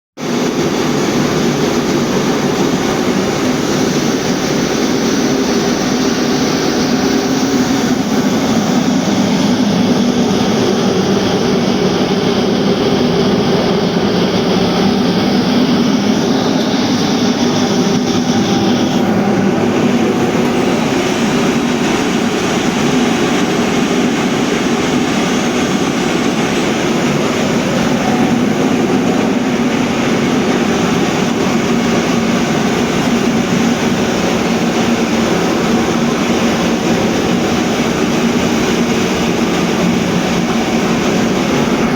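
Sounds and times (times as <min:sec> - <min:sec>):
forging machine droning: 0:00.2 - 0:41.9.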